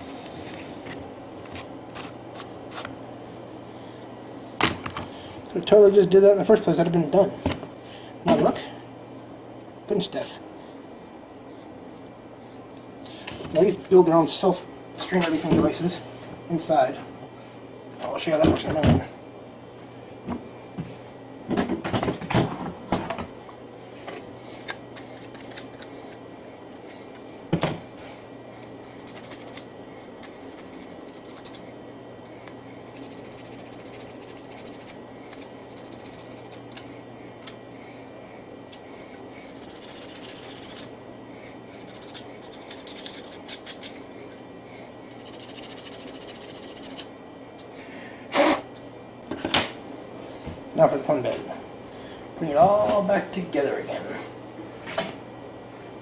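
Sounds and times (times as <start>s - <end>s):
low steady hum: 0.0s - 56.0s
high scraping or snipping: 41.7s - 44.4s.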